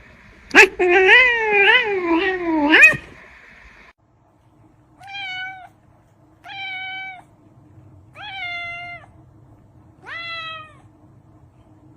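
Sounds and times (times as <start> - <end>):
cat meowing: 5.0 - 5.8, 6.4 - 7.3, 8.1 - 9.2, 10.0 - 10.9.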